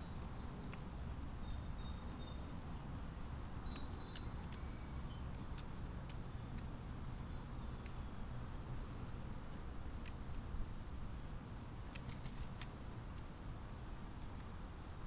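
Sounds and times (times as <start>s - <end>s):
distant small birds chirping: 0.0s - 10.5s
steady low rumble: 0.0s - 15.0s.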